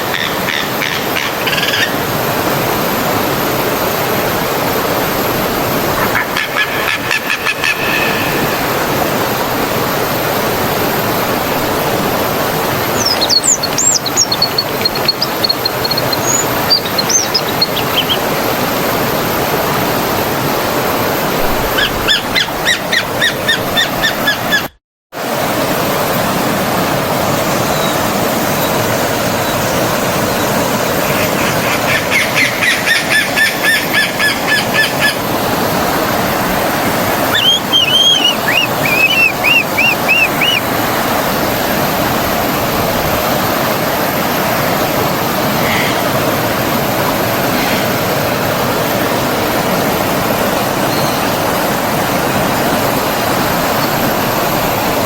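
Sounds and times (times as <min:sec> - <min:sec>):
flowing stream: 0:00.0 - 0:24.6, 0:25.2 - 0:55.0
birds calling: 0:05.9 - 0:08.9, 0:12.6 - 0:18.8, 0:21.7 - 0:24.8, 0:31.0 - 0:35.3, 0:36.8 - 0:41.0.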